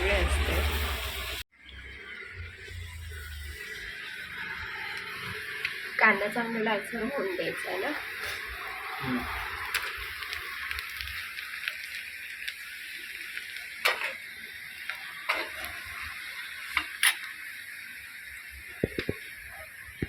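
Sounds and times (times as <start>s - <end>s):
vegetables sizzling in hot oil: 0.0s - 20.0s.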